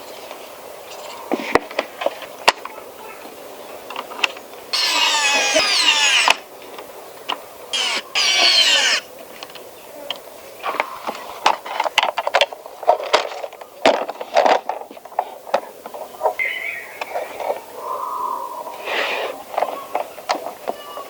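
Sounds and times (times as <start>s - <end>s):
electric screwdriver whirring: 4.8s - 6.4s, 7.8s - 9.1s.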